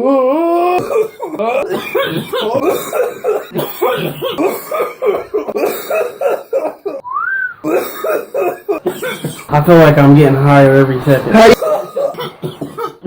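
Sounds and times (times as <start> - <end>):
men coughing hard: 0.8 - 7.0, 7.6 - 9.5, 11.4 - 13.0.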